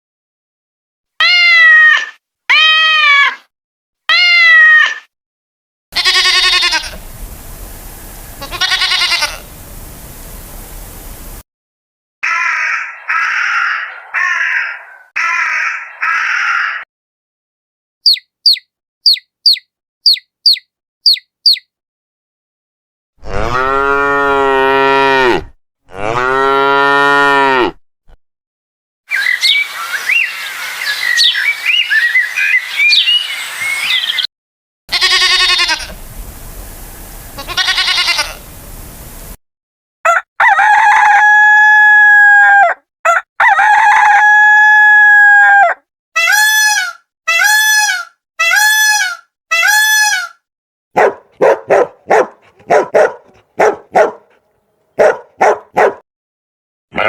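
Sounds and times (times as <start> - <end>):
long pitched animal calls: 8.0 - 9.5, 37.4 - 38.4
cow mooing: 23.2 - 27.8.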